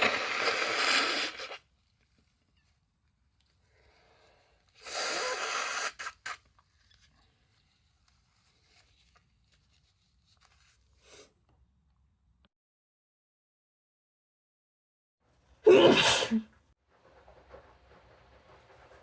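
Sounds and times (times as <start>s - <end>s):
person blowing nose: 0.0s - 1.6s, 4.1s - 6.5s, 15.7s - 16.4s
small sniff: 3.7s - 6.4s, 11.0s - 11.4s
short snorts: 4.8s - 6.4s.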